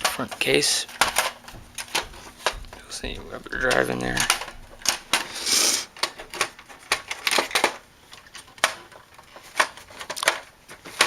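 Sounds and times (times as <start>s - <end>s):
plastic clicks and knocks: 0.0s - 5.3s, 6.0s - 11.0s
brief scrape: 5.3s - 5.9s.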